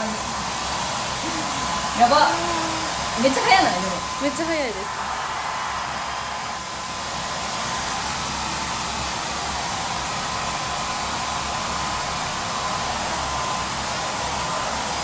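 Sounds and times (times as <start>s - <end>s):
hair dryer running: 0.0s - 15.0s.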